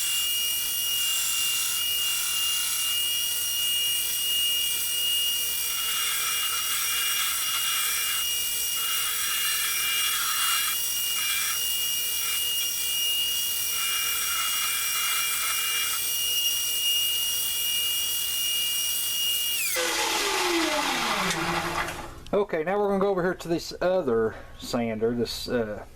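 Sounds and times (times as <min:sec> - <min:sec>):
knife blade grinding: 0:00.0 - 0:16.5
power sander whining: 0:00.0 - 0:22.2.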